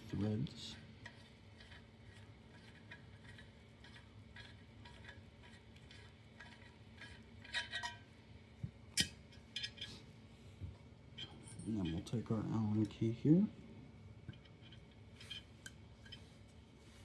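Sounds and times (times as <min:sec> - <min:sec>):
light metallic clicks and clinks: 0:11.2 - 0:13.0.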